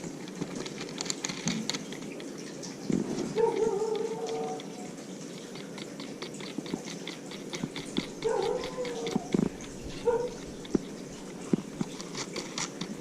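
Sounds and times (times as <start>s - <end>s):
animal whining: 3.3s - 4.9s, 8.1s - 10.6s.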